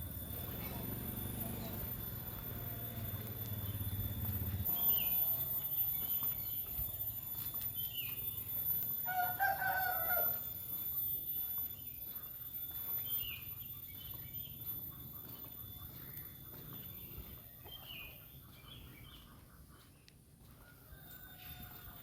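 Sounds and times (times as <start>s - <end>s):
rooster crowing: 9.0s - 10.6s, 20.6s - 22.0s.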